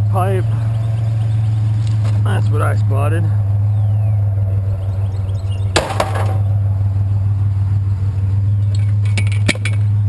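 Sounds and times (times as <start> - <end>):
truck engine idling: 0.0 - 10.0
loud clunk: 5.8 - 6.5.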